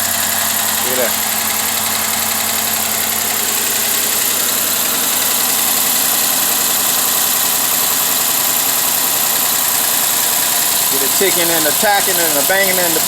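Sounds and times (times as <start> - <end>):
car engine idling with misfire: 0.0 - 13.0
engine ticking and tapping: 0.0 - 13.0.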